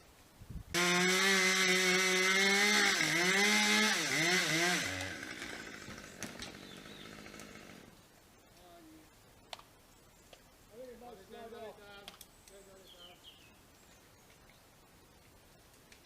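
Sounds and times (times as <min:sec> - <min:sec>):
chainsaw running: 0:00.8 - 0:08.0.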